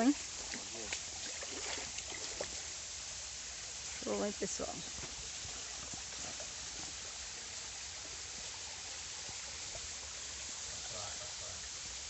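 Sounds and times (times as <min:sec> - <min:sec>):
waterfall rushing: 0:03.8 - 0:12.0.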